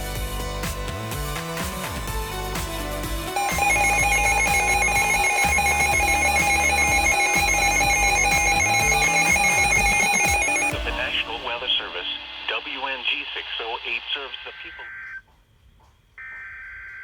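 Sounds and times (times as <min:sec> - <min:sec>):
music playing: 0:00.0 - 0:12.9
loud electronic alert tone: 0:03.4 - 0:12.3.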